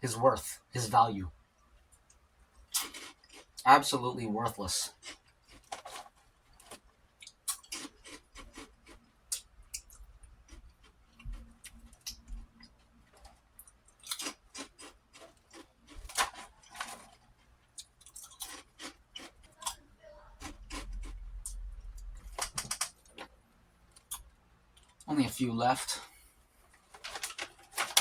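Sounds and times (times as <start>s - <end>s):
prawn crackers crunching: 2.7s - 3.6s, 4.7s - 19.8s, 26.8s - 28.0s.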